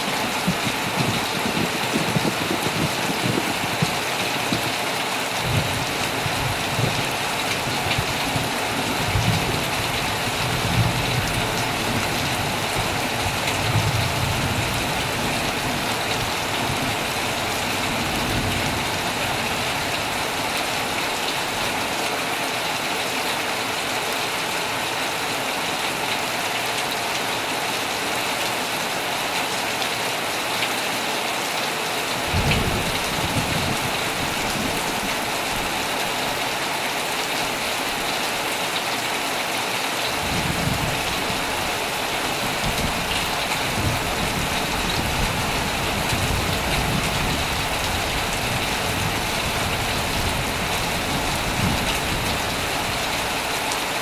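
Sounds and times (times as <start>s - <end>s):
thunder rumbling: 0.0s - 4.8s, 5.4s - 20.5s, 32.2s - 36.4s, 40.2s - 53.4s
heavy rain drumming on a tent: 0.0s - 54.0s.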